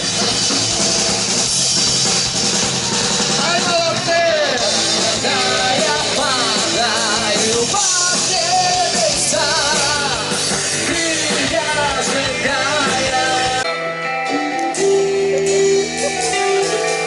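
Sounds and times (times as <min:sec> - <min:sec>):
loud rock band playing: 0:00.0 - 0:17.0
person singing with vibrato: 0:03.4 - 0:13.7.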